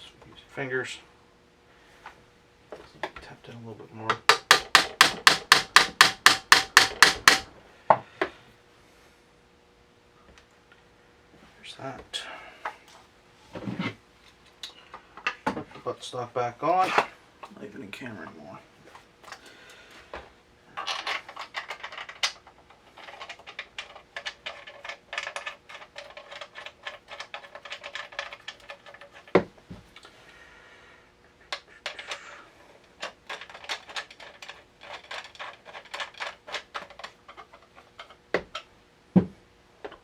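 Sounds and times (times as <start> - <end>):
clicking and scraping of shotgun parts: 18.9 - 19.8, 20.8 - 29.4, 31.5 - 38.7.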